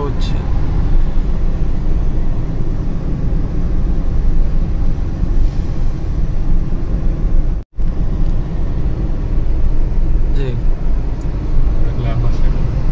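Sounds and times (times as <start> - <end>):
car engine and tyre rumble: 0.0 - 12.9.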